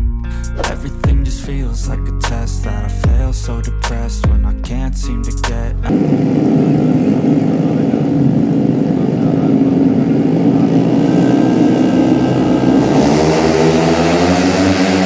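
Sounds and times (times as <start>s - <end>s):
scooter engines at high revs: 5.9s - 15.0s
single scooter engine approaching: 5.9s - 15.0s.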